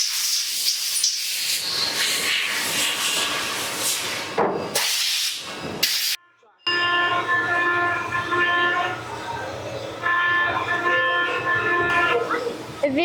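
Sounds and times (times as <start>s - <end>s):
lathe machining hiss: 0.0s - 6.2s.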